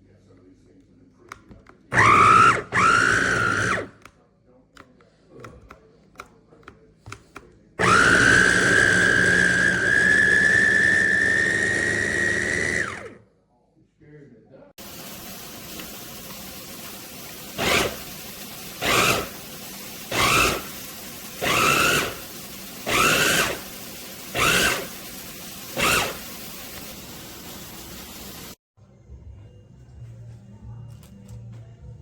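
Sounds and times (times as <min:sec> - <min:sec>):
electric food chopper motor: 0:01.9 - 0:04.0, 0:07.8 - 0:13.2, 0:14.8 - 0:28.6.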